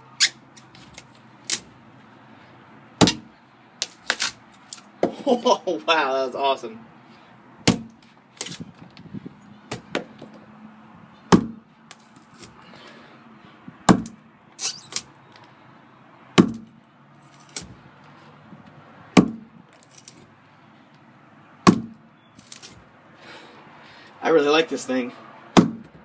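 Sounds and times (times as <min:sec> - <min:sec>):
hatchet striking wooden log: 0:03.0 - 0:04.2, 0:07.6 - 0:08.6, 0:11.3 - 0:11.6, 0:13.9 - 0:14.2, 0:16.4 - 0:16.8, 0:19.2 - 0:19.5, 0:21.6 - 0:22.0, 0:25.6 - 0:26.0.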